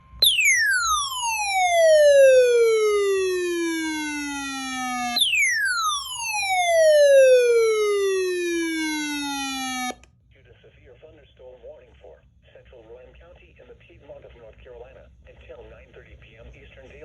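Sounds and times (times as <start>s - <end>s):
electronic alert tone falling sweep: 0.0s - 10.0s.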